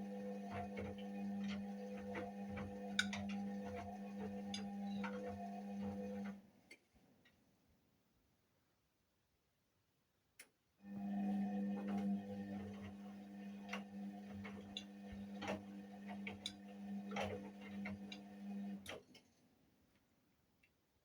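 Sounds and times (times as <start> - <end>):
washing machine motor humming: 0.0 - 6.4, 10.9 - 19.0.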